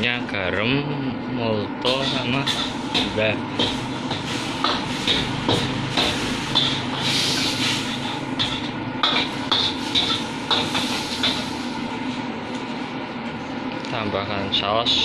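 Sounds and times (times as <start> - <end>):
metal spatula clanking on wok: 1.9 - 7.0, 7.9 - 11.5
frying hiss: 1.9 - 12.2.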